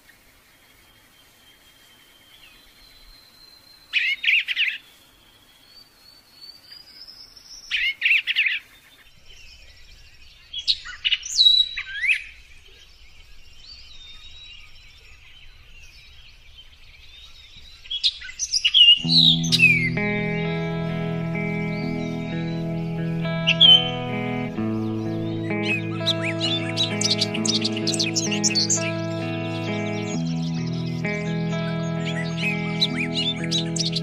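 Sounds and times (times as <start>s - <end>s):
sweeping whistled bird notes: 0.8s - 34.0s
bursts of rapid high bird notes: 18.8s - 34.0s.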